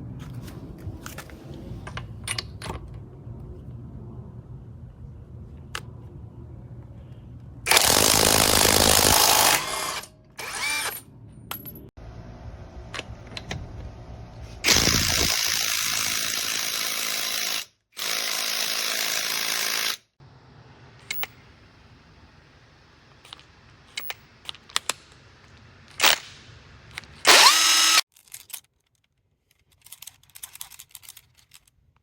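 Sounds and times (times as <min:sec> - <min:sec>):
impact wrench running: 0:07.7 - 0:11.0, 0:14.6 - 0:20.0, 0:27.2 - 0:28.0.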